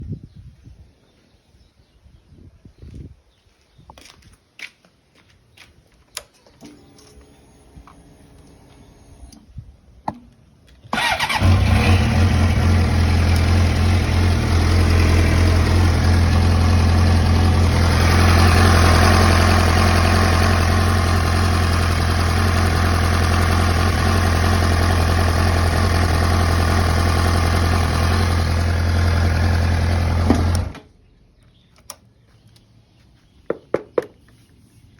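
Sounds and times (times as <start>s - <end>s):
motorcycle engine starting and running: 6.5s - 9.5s, 10.9s - 30.9s.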